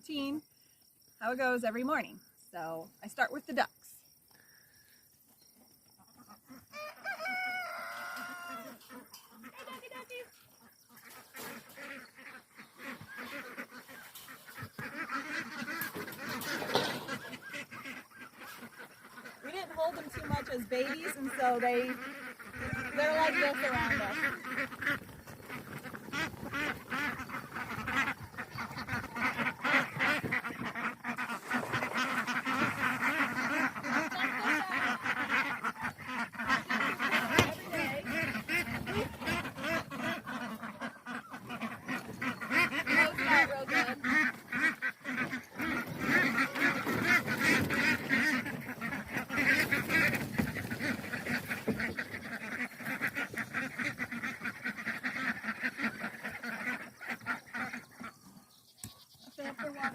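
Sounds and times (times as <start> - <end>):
ducks quacking: 1.2 - 4.8, 6.0 - 59.9.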